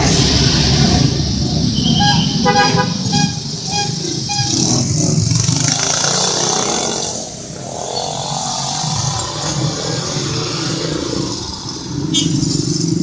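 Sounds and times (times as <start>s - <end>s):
traffic engine and road noise: 0.0s - 10.6s
musical bus horn: 1.8s - 5.0s.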